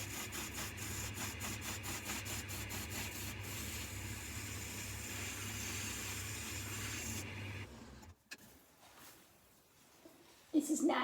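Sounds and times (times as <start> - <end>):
gouge cutting wood: 0.0 - 7.2.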